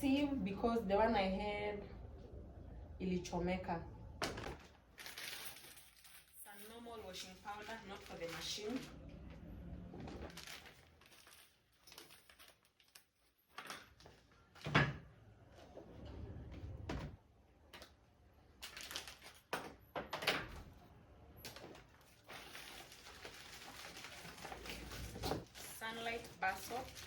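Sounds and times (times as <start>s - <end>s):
items knocking and rustling: 4.2s - 6.4s, 9.9s - 15.1s, 18.6s - 20.7s, 21.4s - 27.0s.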